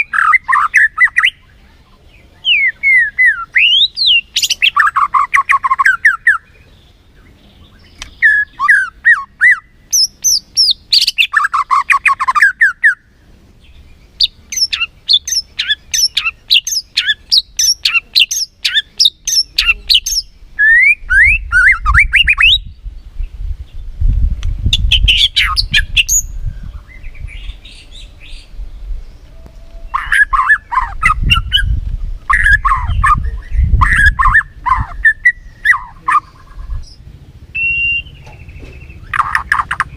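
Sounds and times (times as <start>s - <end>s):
bird singing whistled phrases: 2.4s - 6.5s, 7.2s - 13.1s, 14.2s - 22.8s, 24.7s - 28.5s, 29.3s - 31.7s, 32.3s - 39.9s.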